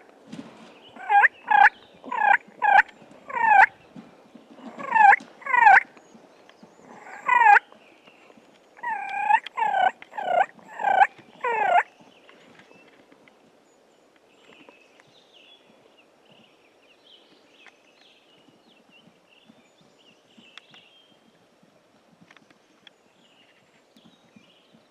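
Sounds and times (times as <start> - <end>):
turkey yelps: 1.0 - 3.7, 4.7 - 5.8, 6.9 - 7.6, 8.8 - 11.9.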